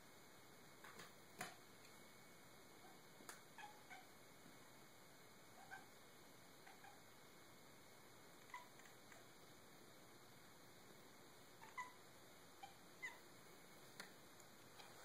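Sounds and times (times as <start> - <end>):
cat chirping: 3.6 - 4.1, 5.6 - 5.9, 6.6 - 7.0, 8.4 - 9.0, 11.6 - 12.0, 12.6 - 13.2, 14.8 - 15.0.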